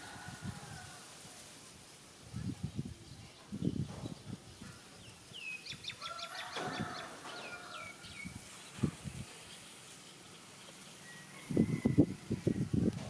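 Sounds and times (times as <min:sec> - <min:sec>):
bird chirping: 0:03.0 - 0:11.7.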